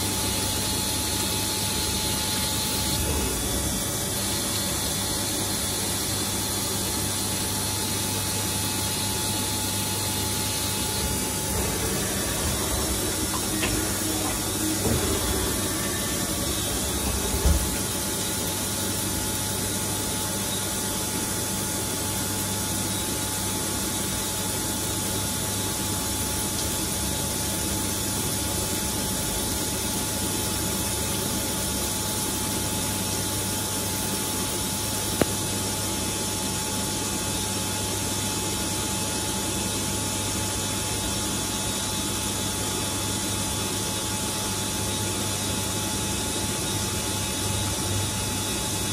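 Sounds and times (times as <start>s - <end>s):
lathe running: 0.3s - 7.3s, 7.9s - 20.0s.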